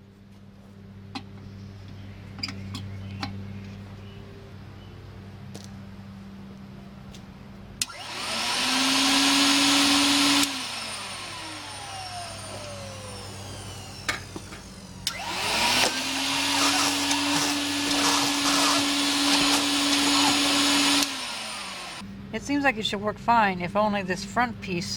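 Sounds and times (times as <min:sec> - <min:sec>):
vacuum cleaner motor whining: 0:07.8 - 0:22.1.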